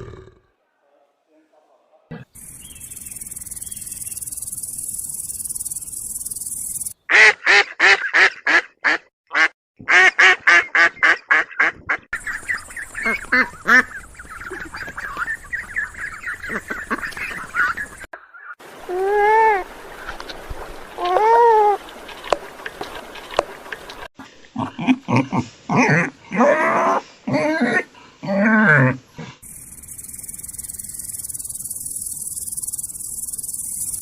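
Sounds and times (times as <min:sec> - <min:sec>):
birds calling together: 0:02.3 - 0:07.0, 0:12.2 - 0:18.6, 0:29.4 - 0:34.0.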